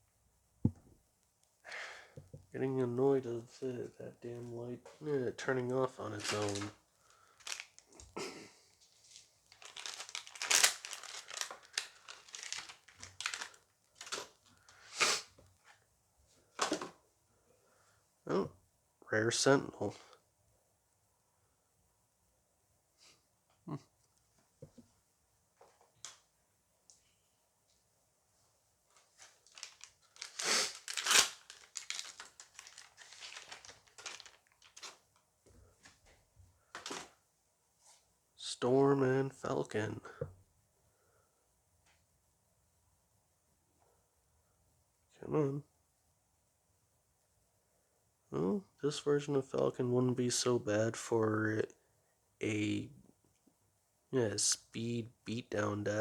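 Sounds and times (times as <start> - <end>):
foil pack crinkling and tearing: 6.1 - 8.0, 9.0 - 15.0, 29.2 - 35.2.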